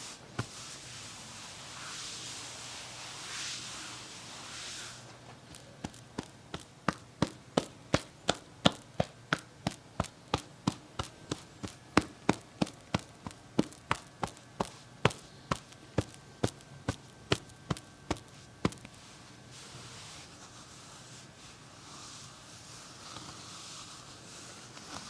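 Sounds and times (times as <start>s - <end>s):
soft hiss of rubbing: 0.0s - 6.6s, 14.2s - 25.0s
sharp massage tapping: 5.5s - 19.0s.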